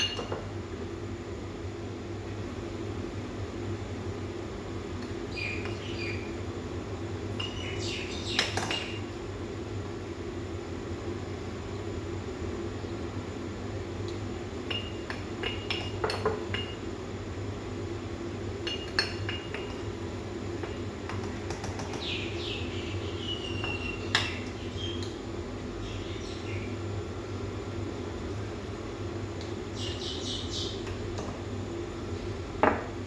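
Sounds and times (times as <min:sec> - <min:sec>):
cups glassware and spoons clinking: 0:00.0 - 0:00.5, 0:14.6 - 0:16.8, 0:18.6 - 0:19.9
steady low hum: 0:00.0 - 0:33.0.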